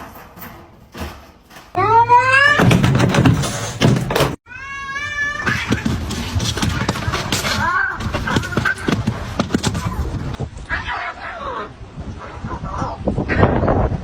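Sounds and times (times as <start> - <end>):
cat meowing: 4.5 - 6.0.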